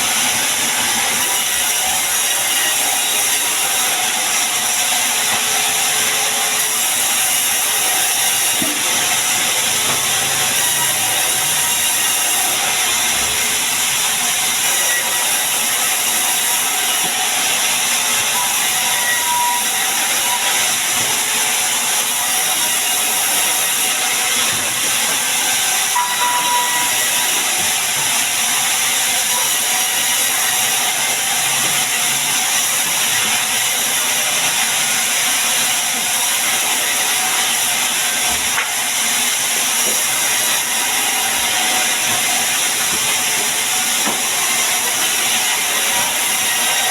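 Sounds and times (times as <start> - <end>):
saw cutting timber: 0.0 - 46.9.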